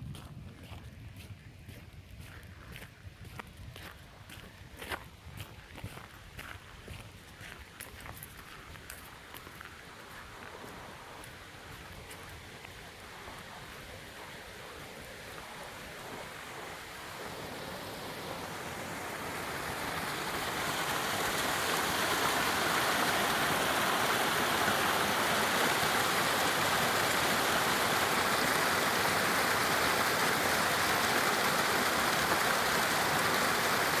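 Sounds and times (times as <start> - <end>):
waterfall rushing: 12.1 - 34.0.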